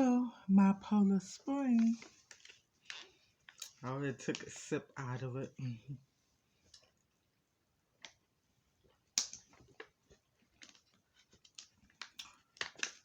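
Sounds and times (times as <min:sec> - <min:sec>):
sharp dry clicks and smacks: 0:09.1 - 0:09.9.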